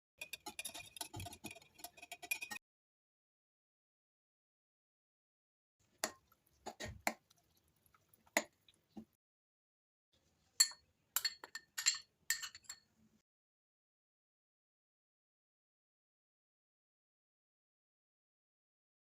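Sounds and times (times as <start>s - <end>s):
spoon clinking against a bowl: 0.2s - 2.6s, 10.6s - 12.9s.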